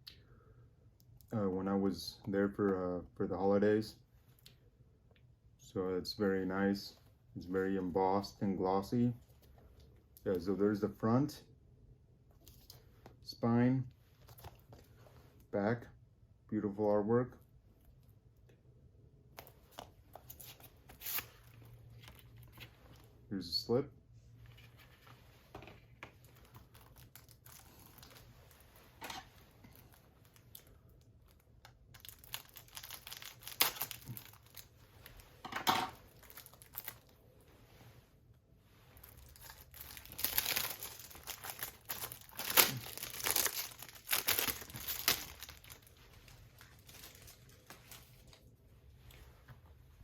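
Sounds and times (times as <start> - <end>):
plastic and card rustling: 14.1 - 15.1, 19.3 - 23.1, 24.4 - 37.2, 39.0 - 49.7.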